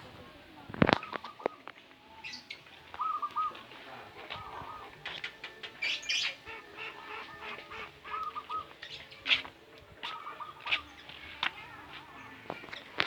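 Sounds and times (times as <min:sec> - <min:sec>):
birds whistling: 0:01.0 - 0:11.1
bird chirps and squawks: 0:05.8 - 0:09.4.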